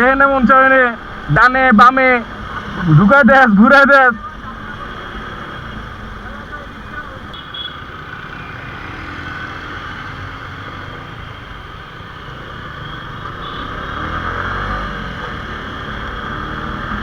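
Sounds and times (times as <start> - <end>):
wind and road noise: 0.0 - 17.0.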